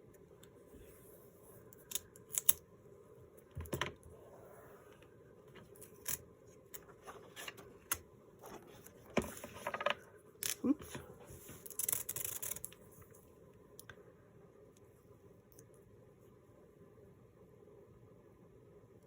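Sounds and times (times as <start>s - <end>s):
paper tape clicks and crinkles: 11.6s - 12.9s.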